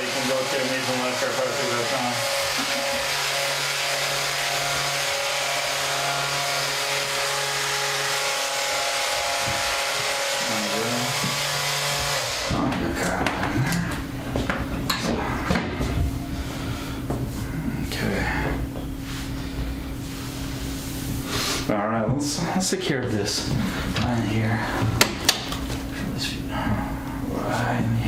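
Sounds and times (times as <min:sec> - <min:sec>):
electric massage tool humming: 0:00.0 - 0:17.4.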